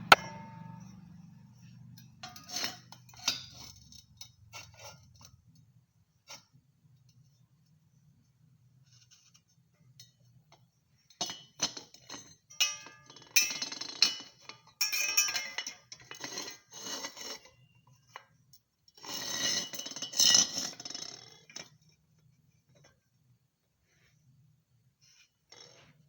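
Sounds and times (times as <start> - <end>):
metal clinking and knocking: 0.0 - 1.2.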